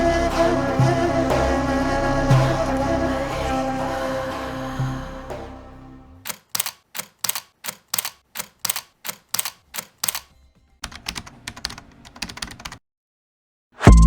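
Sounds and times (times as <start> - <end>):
keyboard typing clicks: 6.2 - 12.8.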